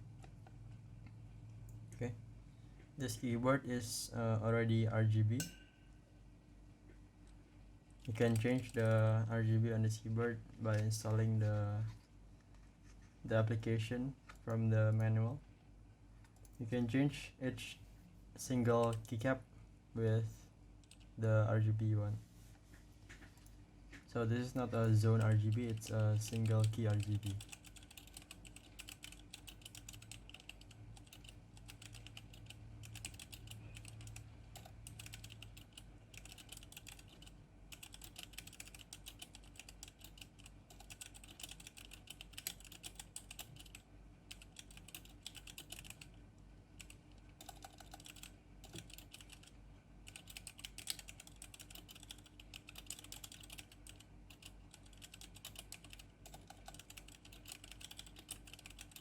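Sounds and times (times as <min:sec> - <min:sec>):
mechanical keyboard typing: 0:08.0 - 0:09.0, 0:24.7 - 0:46.2, 0:46.8 - 0:59.0.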